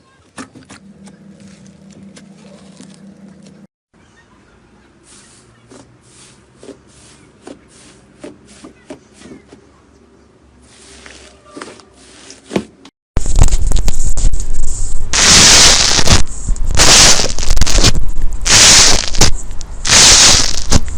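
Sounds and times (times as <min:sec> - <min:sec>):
dense crackling: 0:13.2 - 0:20.9.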